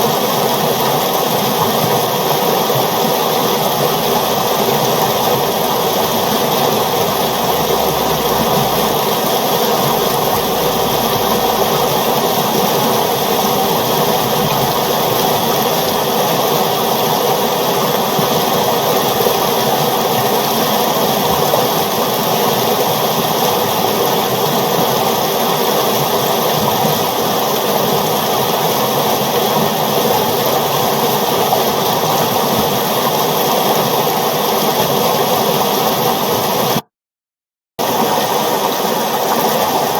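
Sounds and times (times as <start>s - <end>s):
river water flowing: 0.0s - 36.8s, 37.8s - 39.9s.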